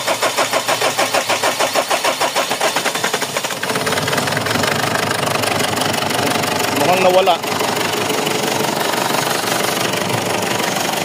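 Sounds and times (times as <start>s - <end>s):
diesel engine running: 0.0s - 11.0s
starter cranking diesel engine: 0.0s - 11.0s.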